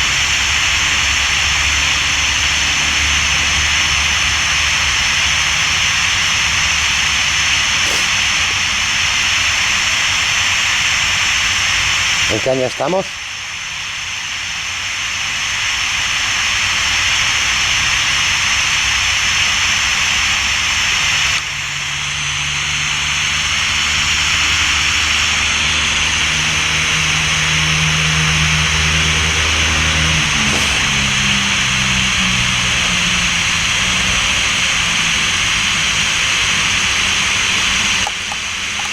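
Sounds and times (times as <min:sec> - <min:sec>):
low droning hum: 0:26.4 - 0:34.9.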